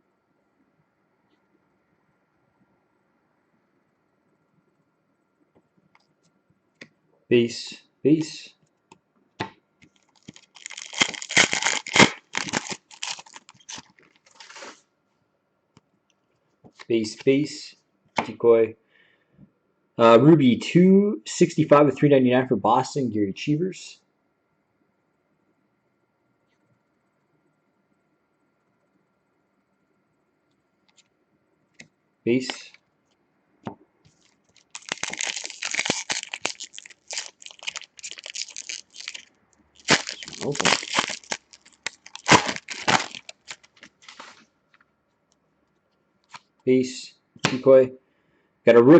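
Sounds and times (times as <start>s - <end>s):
foil wrapper torn and crinkled: 9.9s - 14.8s, 34.1s - 44.4s.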